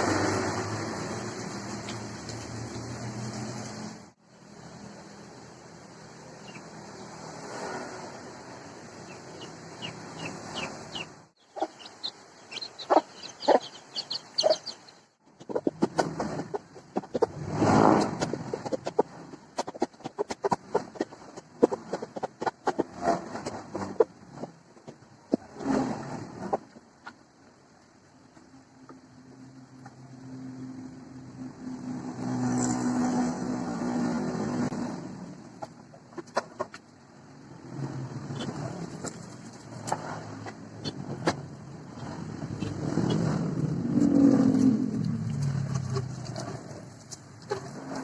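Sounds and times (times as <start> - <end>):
rain hissing: 0.0 - 4.2
vehicle engine humming: 0.0 - 48.0
chickens clucking: 9.0 - 17.4, 18.1 - 25.6, 35.6 - 37.0, 38.3 - 43.3, 45.7 - 48.0.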